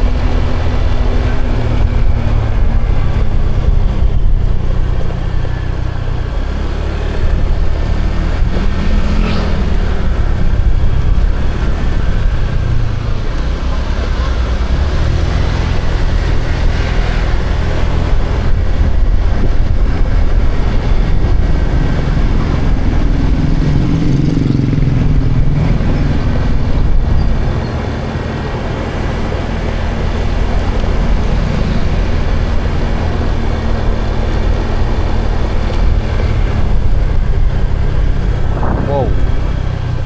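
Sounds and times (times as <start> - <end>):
road noise: 0.0 - 40.0
vehicle engine rumble: 0.0 - 40.0.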